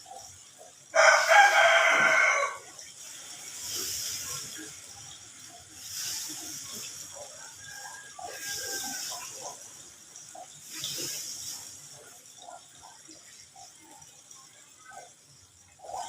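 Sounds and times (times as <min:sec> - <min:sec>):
rooster crowing: 0:01.0 - 0:02.7.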